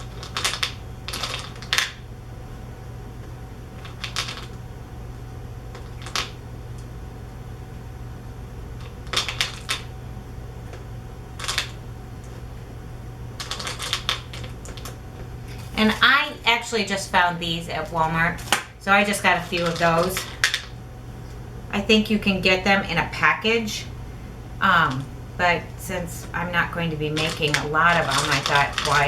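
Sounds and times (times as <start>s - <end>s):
candy eggs clicking and rattling: 0.0s - 2.0s, 3.8s - 4.6s, 5.7s - 6.4s, 8.8s - 10.0s, 11.4s - 12.4s, 13.4s - 16.8s, 17.5s - 20.8s, 26.7s - 29.0s.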